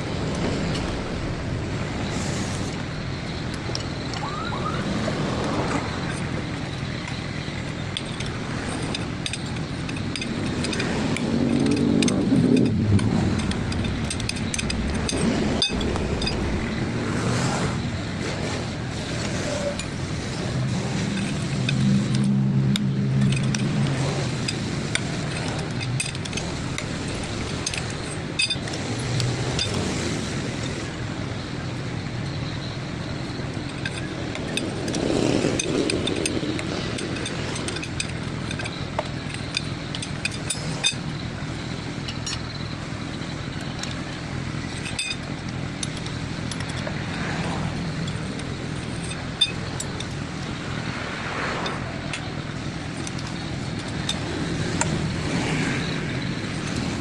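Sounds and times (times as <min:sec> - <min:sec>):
steady background noise: 0:00.0 - 0:57.0
metallic clinks of tools: 0:06.0 - 0:16.8, 0:19.1 - 0:30.8, 0:32.4 - 0:41.4, 0:42.0 - 0:51.0, 0:51.6 - 0:57.0.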